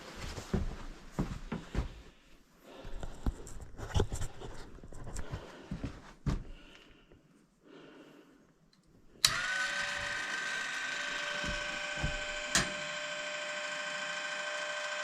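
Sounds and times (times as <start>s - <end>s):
machine motor running: 9.2s - 15.0s.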